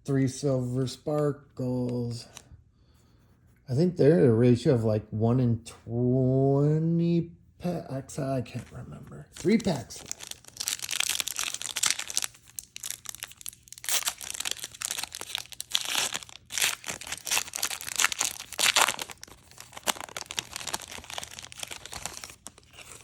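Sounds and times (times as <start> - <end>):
foil wrappers crinkling: 9.4 - 23.0.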